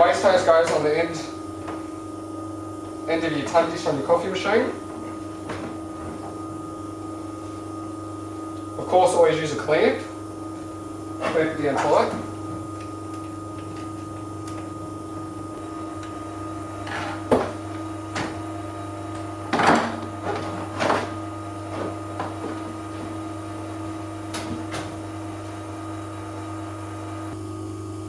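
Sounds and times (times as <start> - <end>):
water pump humming: 0.0 - 28.0.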